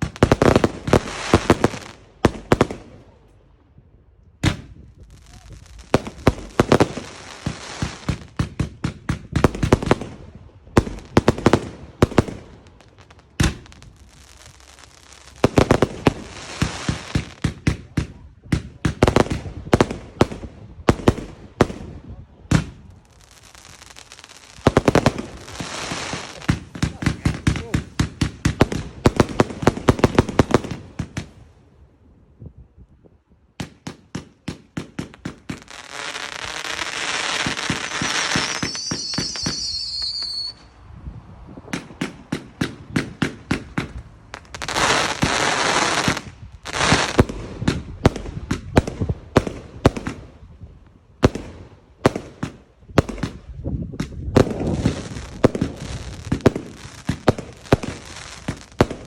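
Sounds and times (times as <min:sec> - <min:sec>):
firework hissing crackle: 0:00.0 - 0:02.8, 0:04.4 - 0:08.5, 0:09.3 - 0:17.6, 0:22.5 - 0:31.4, 0:34.9 - 0:50.4, 0:51.2 - 0:59.0
firework bangs: 0:00.0 - 0:03.4, 0:04.4 - 0:31.5, 0:33.6 - 0:40.8, 0:41.5 - 0:59.0
high whistling tone: 0:38.5 - 0:40.8.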